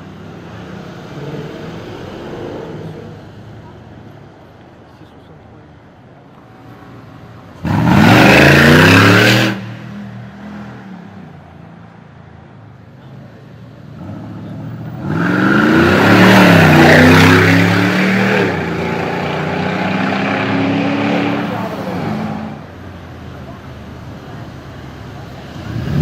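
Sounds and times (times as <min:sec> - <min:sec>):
suv engine revving: 0:07.6 - 0:11.1, 0:13.9 - 0:22.7, 0:25.4 - 0:26.0.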